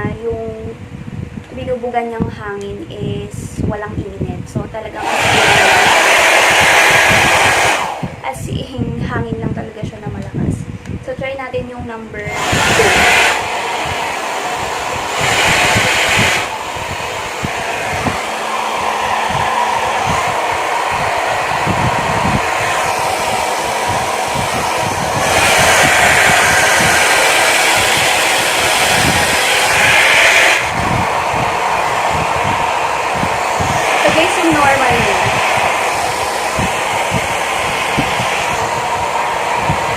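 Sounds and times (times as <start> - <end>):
wind buffeting microphone: 0.0 - 39.9
hair dryer blowing air: 4.6 - 8.6, 12.2 - 39.9.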